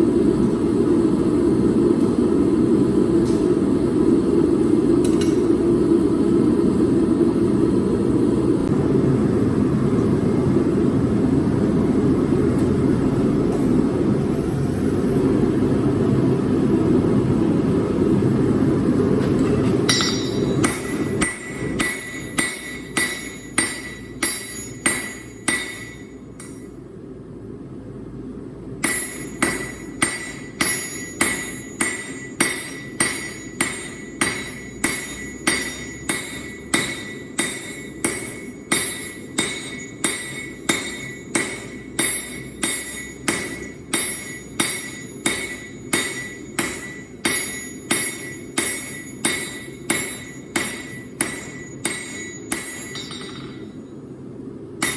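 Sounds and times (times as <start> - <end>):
hammer ringing on anvil: 19.9 - 26.8, 28.8 - 54.0.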